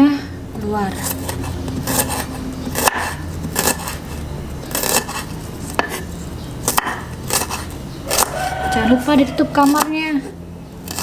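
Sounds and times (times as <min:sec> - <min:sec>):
steady low hum: 0:00.0 - 0:11.0
knife cutting on cutting board: 0:00.9 - 0:06.1, 0:06.7 - 0:08.3.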